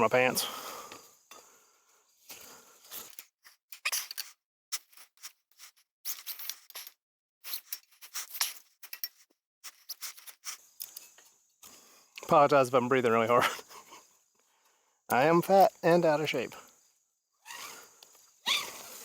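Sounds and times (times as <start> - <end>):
metal hardware clinking and scraping: 2.9 - 11.3.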